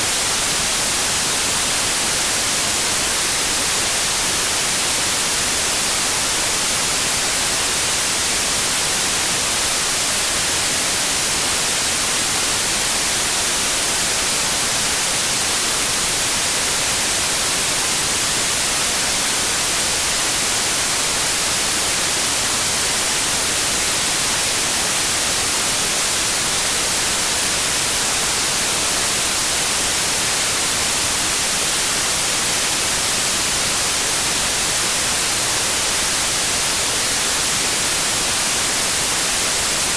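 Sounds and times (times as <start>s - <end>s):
white noise hiss: 0.0s - 39.9s.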